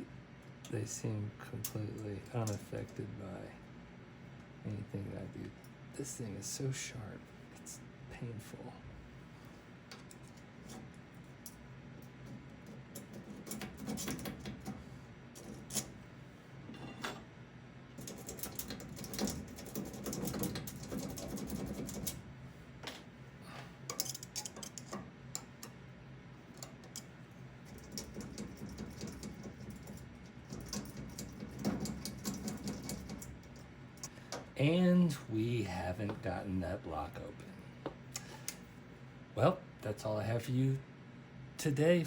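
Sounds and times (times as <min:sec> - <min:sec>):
metal picks scraping in a lock: 0:12.9 - 0:14.7, 0:15.4 - 0:16.0, 0:18.0 - 0:22.2, 0:23.9 - 0:25.7, 0:27.7 - 0:34.1.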